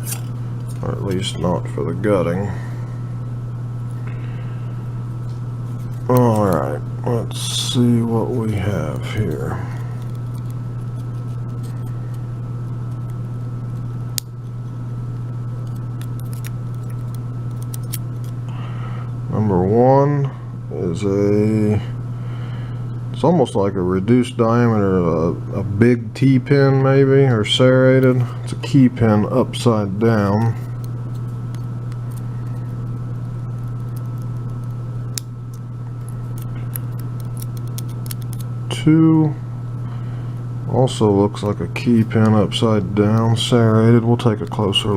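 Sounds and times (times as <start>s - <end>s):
steady low hum: 0.0s - 44.9s.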